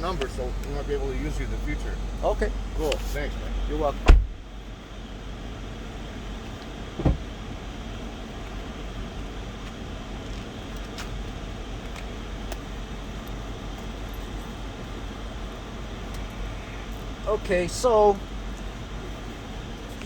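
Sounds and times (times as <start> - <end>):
car engine idling: 0.0 - 20.0
heater blower running: 0.0 - 20.0
thump: 4.0 - 4.4, 7.0 - 7.3.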